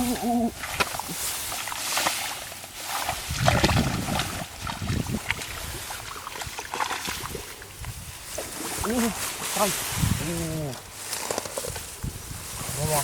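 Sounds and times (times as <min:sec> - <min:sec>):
water sloshing in muddy field: 0:00.0 - 0:13.0.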